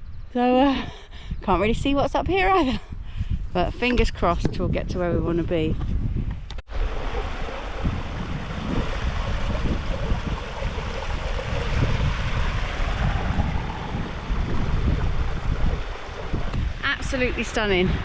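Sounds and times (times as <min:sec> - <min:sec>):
wind buffeting microphone: 0:00.0 - 0:18.0
steady rushing roar: 0:06.7 - 0:18.0.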